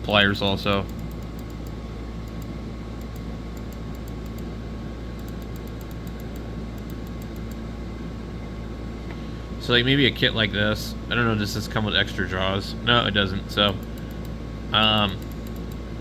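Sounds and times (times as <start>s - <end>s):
low hum and hiss: 0.0s - 16.0s
quick light ticks: 5.2s - 7.6s, 13.8s - 14.4s, 15.2s - 15.8s.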